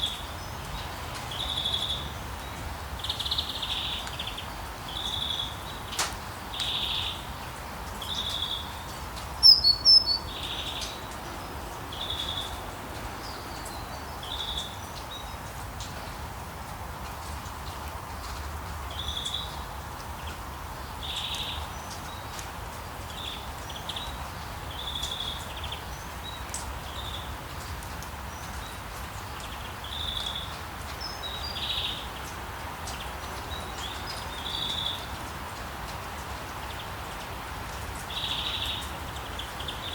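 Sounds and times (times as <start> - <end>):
background hiss: 0.0 - 16.8
birds chirping: 8.0 - 12.6.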